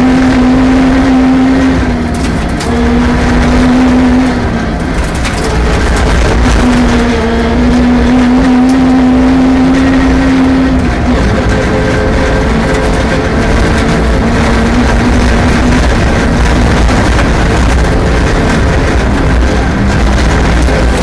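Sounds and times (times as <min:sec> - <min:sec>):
rally car engine: 0:00.0 - 0:21.0
road and tyre noise: 0:00.0 - 0:21.0.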